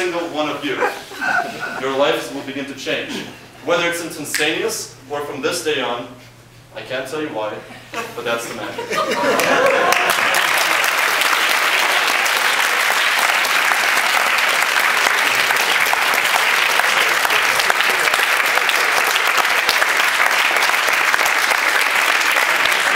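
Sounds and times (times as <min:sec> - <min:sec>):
audience applauding: 0:09.2 - 0:22.9.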